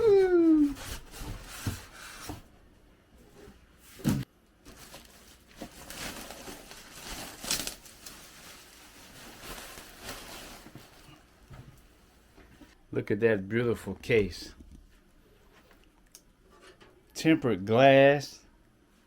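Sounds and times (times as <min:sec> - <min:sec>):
packaging rustling and crinkling: 0:04.6 - 0:11.3.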